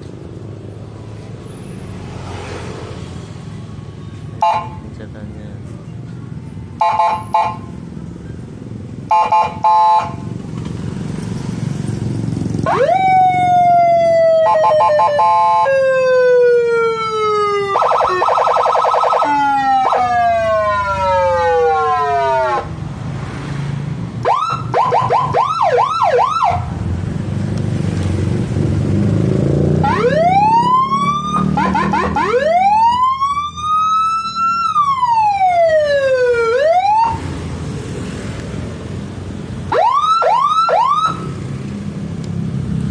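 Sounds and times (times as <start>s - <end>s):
electronic siren: 12.6s - 22.7s, 24.2s - 26.7s, 29.8s - 37.3s, 39.7s - 41.3s.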